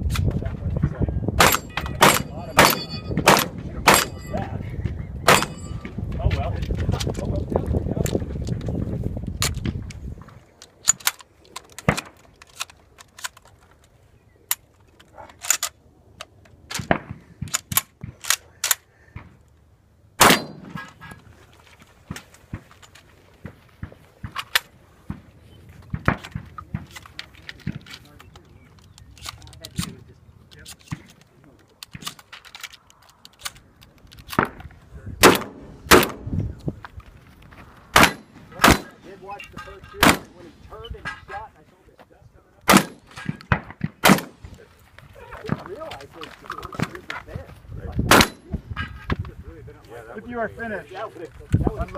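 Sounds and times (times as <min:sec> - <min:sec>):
shotgun shots: 0:01.4 - 0:04.2, 0:05.3 - 0:05.8, 0:20.2 - 0:21.0, 0:35.2 - 0:36.3, 0:37.9 - 0:39.1, 0:40.0 - 0:40.5, 0:42.6 - 0:44.5, 0:48.1 - 0:48.5.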